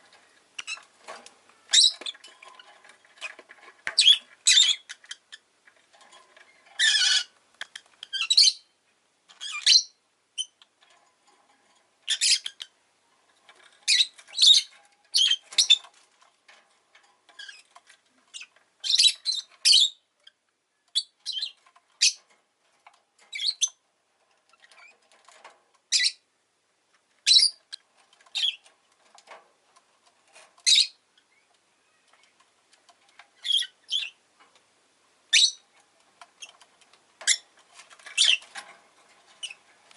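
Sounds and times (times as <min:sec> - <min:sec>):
lovebird chirping: 0:01.6 - 0:02.2, 0:08.1 - 0:08.8, 0:09.4 - 0:10.6, 0:13.9 - 0:15.8, 0:18.3 - 0:22.2, 0:25.9 - 0:26.2, 0:27.2 - 0:27.6, 0:30.6 - 0:32.4, 0:33.4 - 0:34.2, 0:35.3 - 0:35.6, 0:38.2 - 0:38.4.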